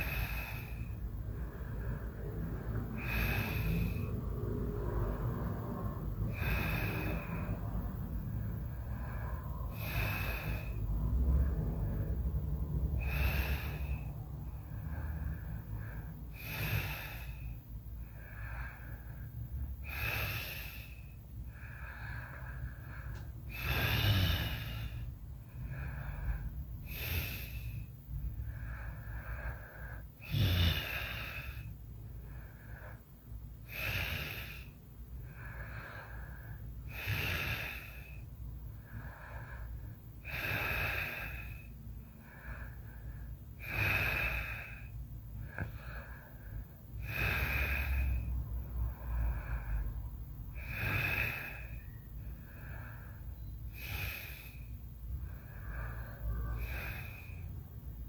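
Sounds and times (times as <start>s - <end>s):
person snoring: 1.8s - 7.8s, 8.9s - 12.1s, 13.0s - 14.1s, 16.3s - 17.5s, 19.8s - 27.9s, 28.6s - 31.7s, 33.6s - 34.7s, 36.8s - 38.3s, 40.2s - 41.7s, 43.6s - 46.2s, 47.0s - 49.9s, 50.5s - 53.0s, 53.7s - 57.6s.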